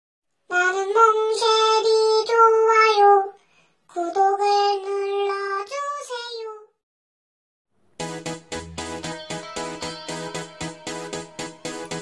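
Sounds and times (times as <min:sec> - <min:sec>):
high childlike singing voice: 0:00.5 - 0:06.8.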